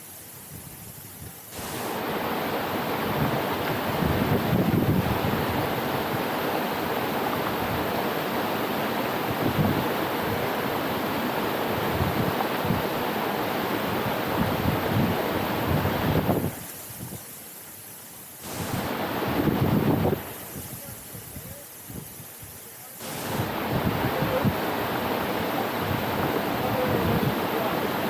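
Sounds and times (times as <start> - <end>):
waterfall rushing: 1.5 - 21.9, 22.6 - 28.0
wind buffeting microphone: 3.0 - 6.4, 9.2 - 10.8, 11.7 - 13.0, 13.8 - 17.2, 18.4 - 22.6, 23.2 - 28.0.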